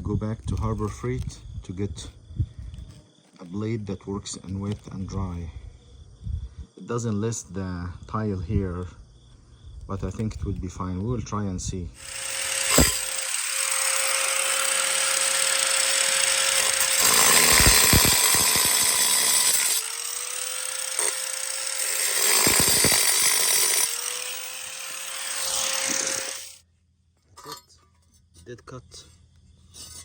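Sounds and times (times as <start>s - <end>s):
angle grinder cutting tile: 12.0s - 26.6s.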